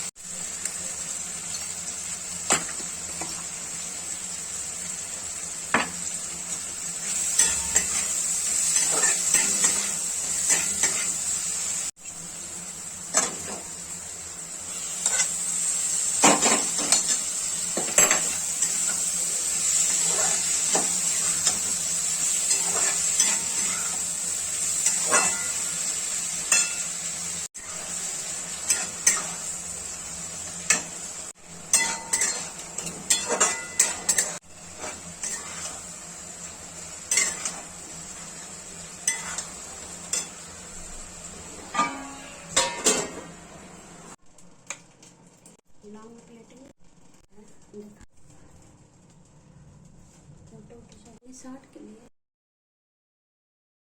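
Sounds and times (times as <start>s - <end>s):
food sizzling in a pan: 0.0s - 52.0s
metal spoon scraping a pan: 7.0s - 11.8s, 14.7s - 15.5s, 16.2s - 29.7s, 31.7s - 43.5s.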